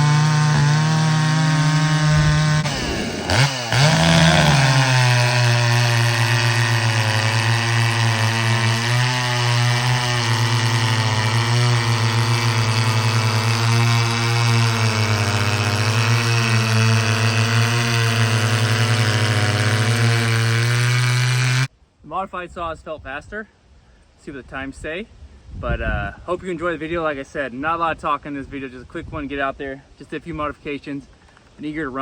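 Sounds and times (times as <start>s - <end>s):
chainsaw running hard: 0.0s - 21.7s.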